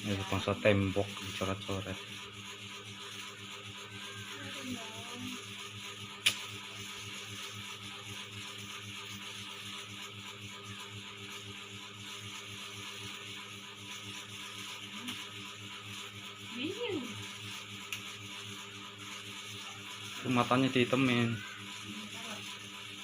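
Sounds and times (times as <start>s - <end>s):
small motor humming: 0.0s - 23.0s
sharp click: 6.2s - 6.4s.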